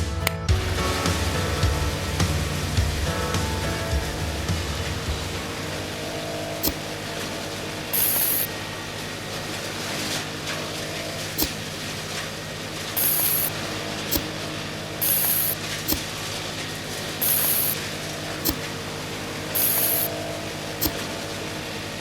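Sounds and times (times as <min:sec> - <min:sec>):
small electric motor humming: 0:05.4 - 0:22.0
sharp click: 0:06.6 - 0:06.9, 0:08.0 - 0:08.5, 0:11.4 - 0:11.6, 0:13.0 - 0:13.5, 0:15.0 - 0:16.1, 0:17.2 - 0:17.8, 0:18.4 - 0:18.7, 0:19.6 - 0:20.1, 0:20.8 - 0:21.1
high hissing scrape: 0:06.6 - 0:07.0, 0:07.9 - 0:08.6, 0:13.0 - 0:14.4, 0:15.0 - 0:16.3, 0:17.2 - 0:17.8, 0:19.5 - 0:20.2.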